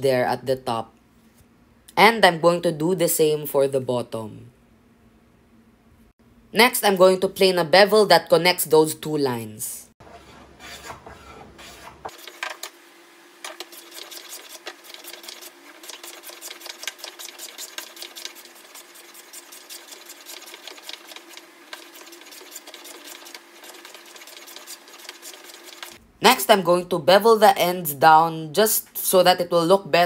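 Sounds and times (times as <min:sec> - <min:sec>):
hand plane strokes on wood: 0:10.0 - 0:12.4, 0:13.5 - 0:26.0.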